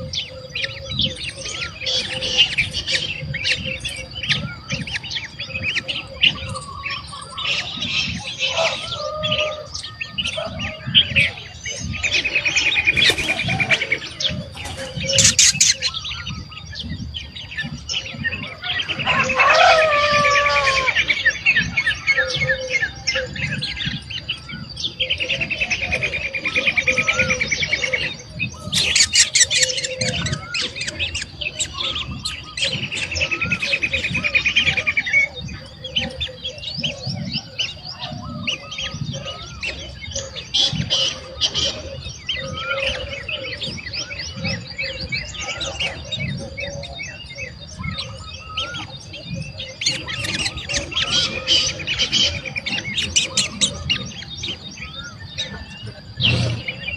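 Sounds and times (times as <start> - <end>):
sharp bird chirps: 35.6 - 56.9.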